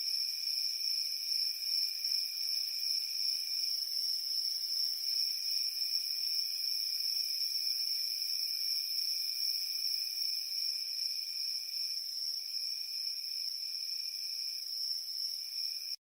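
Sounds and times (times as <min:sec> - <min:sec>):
high-pitched insect trill: 0:00.0 - 0:16.0
lower insect trill: 0:00.0 - 0:16.0.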